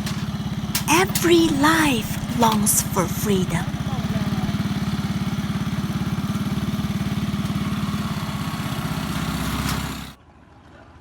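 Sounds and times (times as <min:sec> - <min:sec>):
engine idling: 0:00.0 - 0:00.9, 0:03.6 - 0:10.2.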